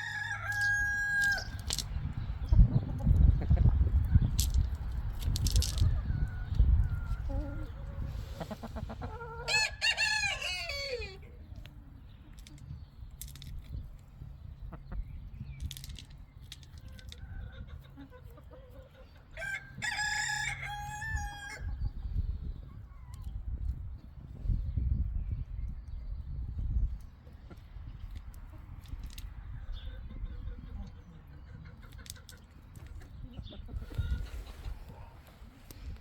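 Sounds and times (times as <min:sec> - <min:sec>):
rooster crowing: 0:00.0 - 0:01.5, 0:19.4 - 0:21.6
hens clucking: 0:00.0 - 0:24.5, 0:27.0 - 0:36.0.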